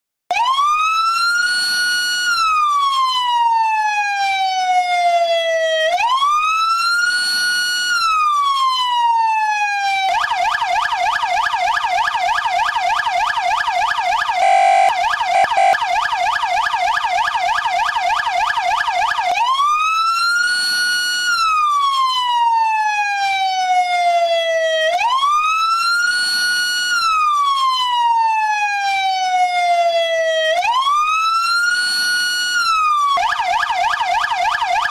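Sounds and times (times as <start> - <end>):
fast siren yelp: 0.3 - 34.9
police siren wail: 0.3 - 34.9
short steady siren blasts: 10.1 - 21.7.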